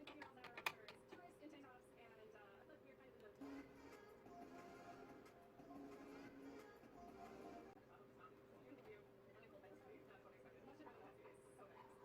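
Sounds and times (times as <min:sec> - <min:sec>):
faint music with held notes: 0:03.4 - 0:07.9.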